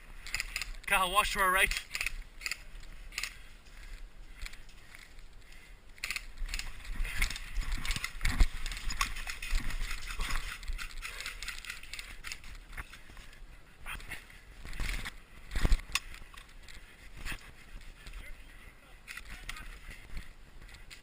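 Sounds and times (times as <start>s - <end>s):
rustling: 1.7s - 21.0s
scattered clicks and knocks: 6.0s - 13.0s.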